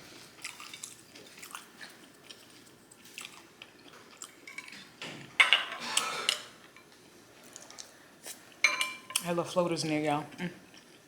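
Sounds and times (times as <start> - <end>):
quiet chewing with mouth clicks: 0.2 - 4.9, 7.4 - 8.6
utensils clattering against dishes: 5.4 - 6.6, 8.6 - 9.3.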